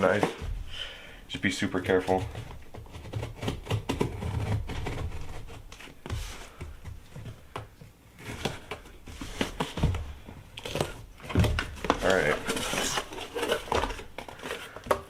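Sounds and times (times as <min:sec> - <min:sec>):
packaging crinkling and tearing: 0:10.5 - 0:15.0
clicks and scrapes: 0:10.6 - 0:15.0.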